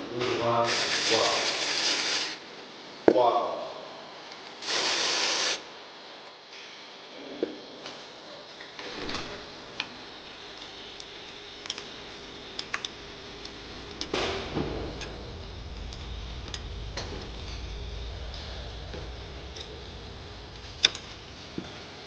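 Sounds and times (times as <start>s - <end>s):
low steady hum: 5.6s - 22.0s.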